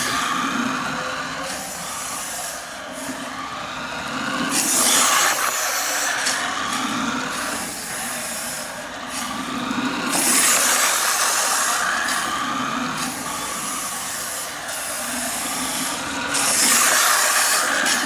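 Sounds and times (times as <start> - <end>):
toy car rolling hiss: 0.0 - 18.0.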